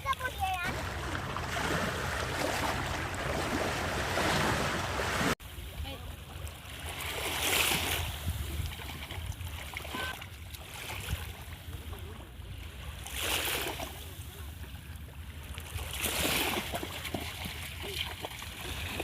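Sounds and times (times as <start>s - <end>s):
sea waves washing onto beach: 0.0s - 6.0s
wind rumble on microphone: 7.7s - 9.6s.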